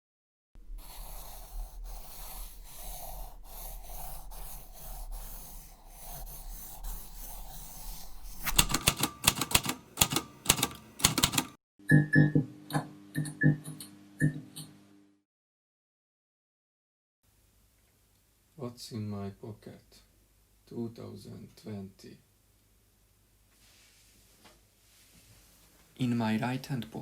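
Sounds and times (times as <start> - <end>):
rapid sharp clicks: 8.4 - 11.6
music: 11.8 - 15.2.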